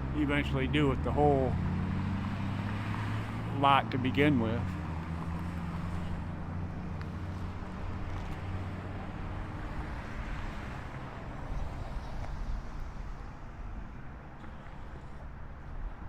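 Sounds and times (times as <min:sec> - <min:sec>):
traffic noise: 0:00.0 - 0:16.0.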